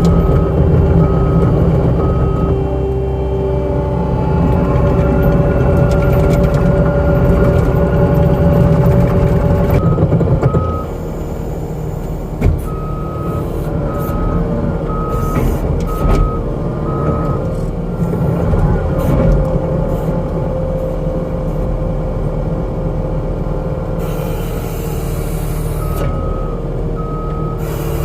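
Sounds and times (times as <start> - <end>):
backup alarm beeping: 0.0 - 7.6, 9.8 - 11.0, 12.6 - 18.1
diesel engine running hard: 0.0 - 28.0.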